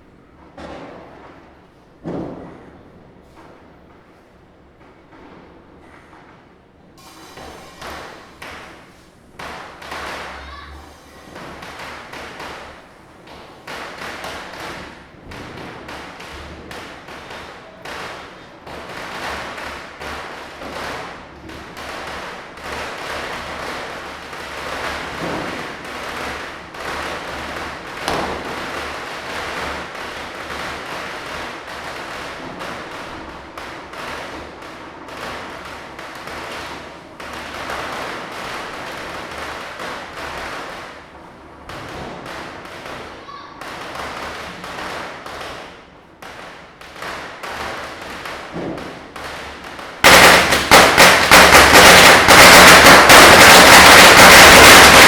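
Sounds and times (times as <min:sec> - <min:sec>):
firecrackers bursting: 0:00.0 - 0:55.0
background hubbub: 0:06.0 - 0:55.0
loud bang: 0:07.0 - 0:12.7, 0:50.0 - 0:55.0.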